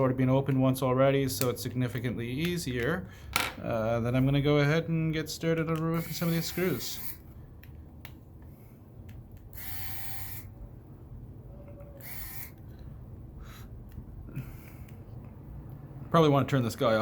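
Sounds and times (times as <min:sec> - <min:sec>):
small tool whirring: 0:06.0 - 0:07.3, 0:09.4 - 0:10.6, 0:11.8 - 0:12.8.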